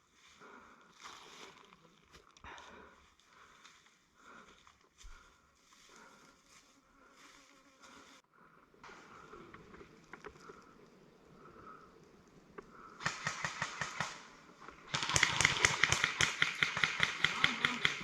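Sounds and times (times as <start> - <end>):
airsoft gun rapid shots: 13.0 - 14.3, 14.9 - 18.0.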